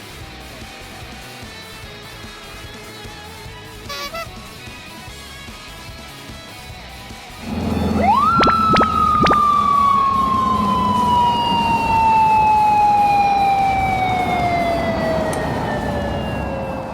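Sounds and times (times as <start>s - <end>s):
low rumble: 7.4s - 16.9s
motorcycle siren wail: 7.4s - 16.9s.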